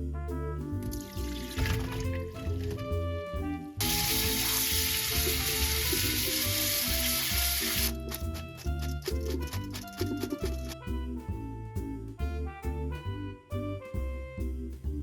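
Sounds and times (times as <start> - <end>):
background music: 0.0 - 15.0
food sizzling in hot oil: 3.8 - 7.9.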